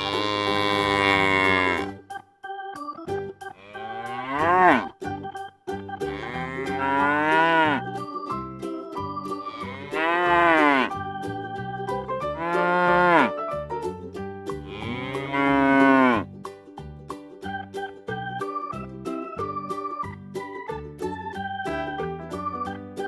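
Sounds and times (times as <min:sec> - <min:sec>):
cow mooing: 0:00.0 - 0:01.9, 0:03.6 - 0:05.0, 0:06.1 - 0:07.8, 0:09.5 - 0:10.9, 0:12.4 - 0:13.3, 0:14.7 - 0:16.2
children's keyboard music: 0:00.0 - 0:23.0.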